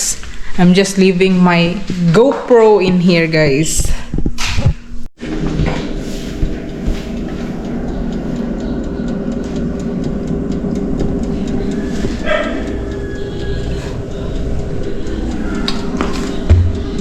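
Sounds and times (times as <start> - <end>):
road noise: 5.2 - 17.0
vehicle engine hum: 5.2 - 17.0
faint light ticking: 6.5 - 17.0.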